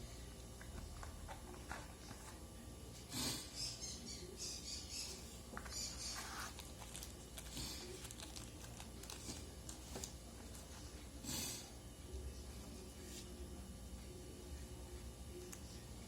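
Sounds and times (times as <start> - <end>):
packaging rustling and crinkling: 6.1 - 10.2.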